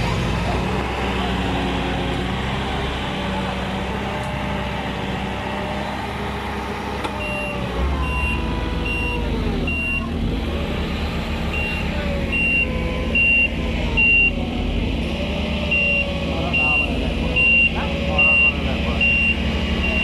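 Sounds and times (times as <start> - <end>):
heavy vehicle engine running: 0.0 - 20.0.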